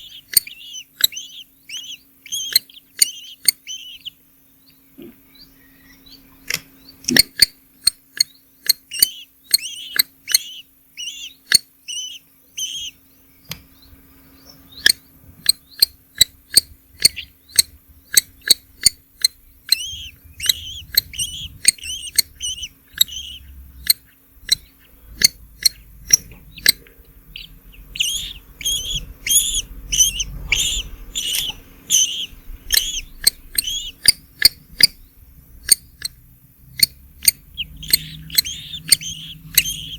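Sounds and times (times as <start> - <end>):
nestling birds chirping: 0.0 - 39.9
sharp clicks: 6.4 - 10.5, 14.8 - 27.0, 28.0 - 35.0, 35.6 - 36.2, 36.8 - 39.9.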